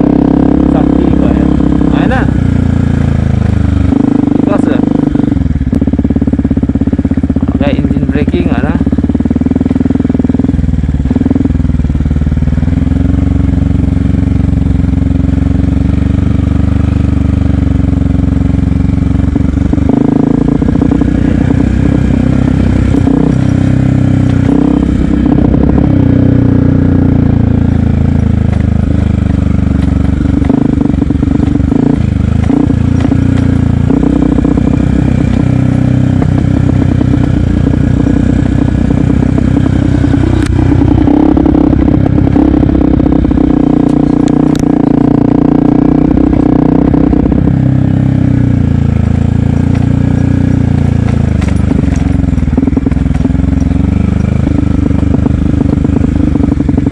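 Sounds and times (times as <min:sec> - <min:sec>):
motorcycle engine revving: 0:00.0 - 0:56.9
knocks and clatter: 0:28.4 - 0:33.6, 0:50.8 - 0:54.4.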